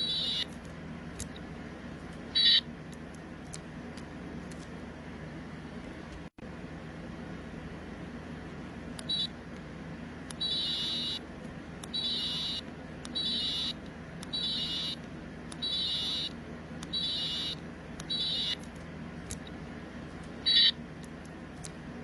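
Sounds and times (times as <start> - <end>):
toy beeping high-pitched tone: 0.0 - 0.5, 10.4 - 11.2, 12.0 - 12.6, 13.2 - 13.8, 14.4 - 15.0, 15.6 - 16.3, 16.9 - 18.6.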